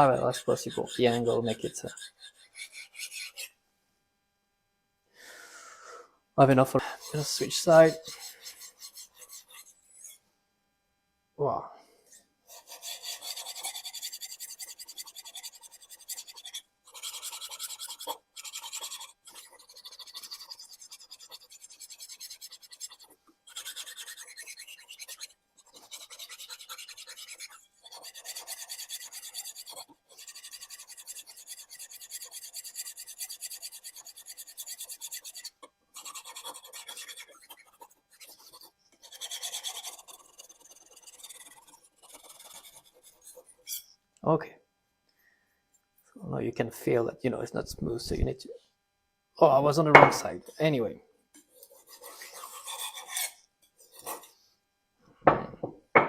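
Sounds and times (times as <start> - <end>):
knife scraping on whetstone: 0.0 - 3.5, 6.8 - 10.2, 12.5 - 43.9, 51.6 - 54.4.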